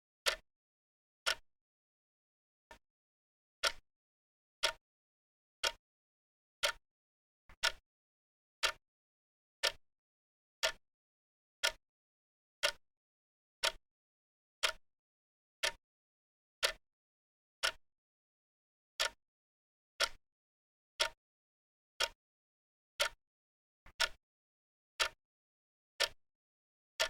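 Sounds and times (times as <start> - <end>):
clock ticking: 7.6 - 7.8, 20.0 - 20.2, 23.9 - 24.2.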